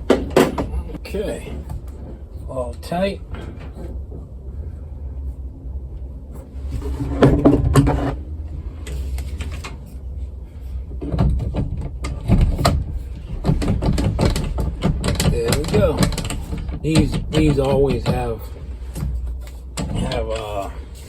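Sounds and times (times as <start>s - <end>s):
low steady rumble: 0.0s - 21.0s
metal parts clicking and knocking: 11.0s - 21.0s.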